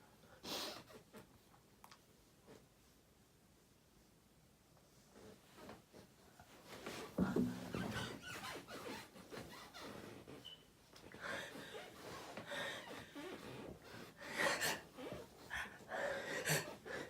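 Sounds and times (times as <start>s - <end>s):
person gasping and sniffing: 11.2s - 17.0s.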